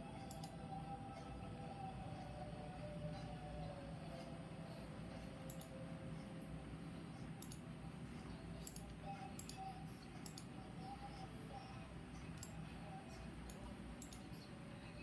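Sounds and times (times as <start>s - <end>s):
low background hum: 0.0s - 15.0s
faint clicks: 5.5s - 5.7s, 7.4s - 7.6s, 13.4s - 14.3s.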